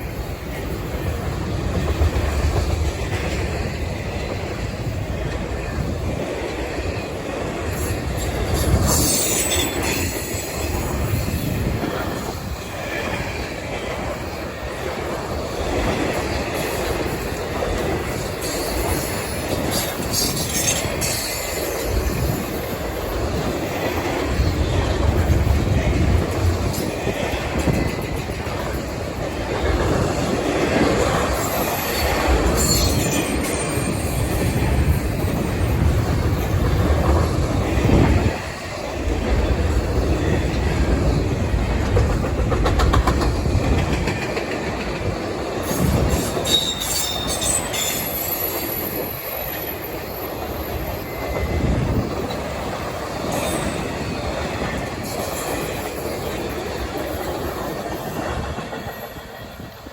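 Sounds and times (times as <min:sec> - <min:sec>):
freight train cars rumbling: 0:00.0 - 0:59.9
high-pitched wheel squeal: 0:46.4 - 0:49.0.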